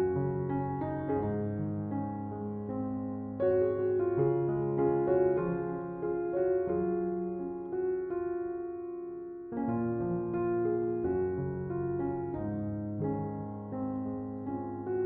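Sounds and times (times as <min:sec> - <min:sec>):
soft slow piano music: 0:00.0 - 0:15.0.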